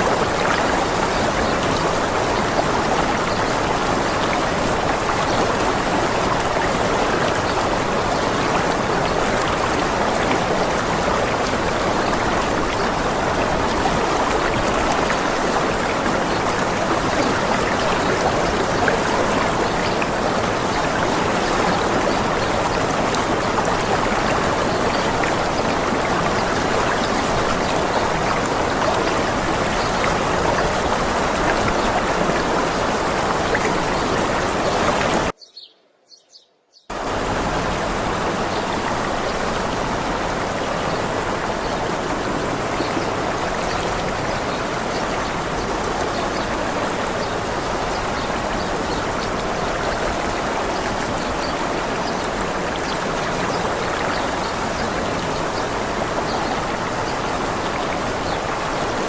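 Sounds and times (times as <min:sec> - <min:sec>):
waterfall rushing: 0:00.0 - 0:35.4, 0:36.9 - 0:59.0
faint high bird chirps: 0:35.4 - 0:36.9.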